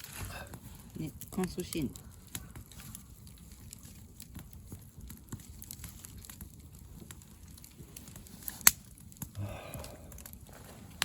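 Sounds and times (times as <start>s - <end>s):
campfire crackling: 0.0s - 11.0s.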